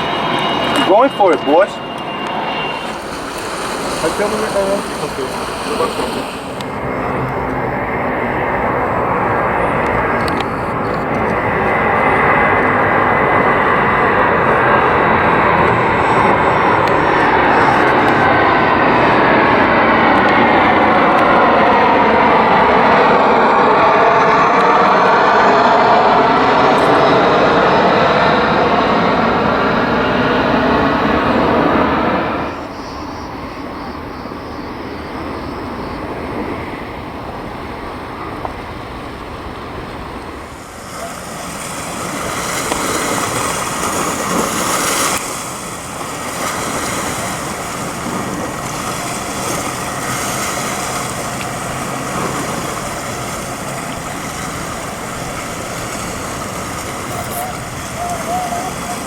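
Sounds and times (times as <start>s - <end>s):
wind rushing: 0.0s - 32.7s
aircraft engine noise: 0.0s - 59.0s
surf: 0.0s - 59.0s.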